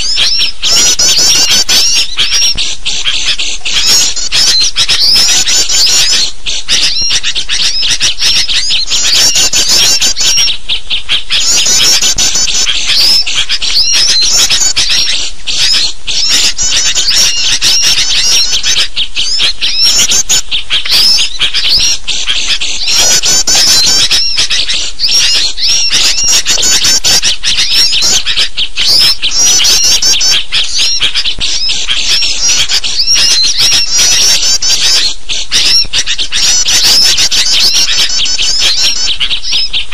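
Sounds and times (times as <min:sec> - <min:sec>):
chattering bird calls: 0:00.0 - 0:39.9.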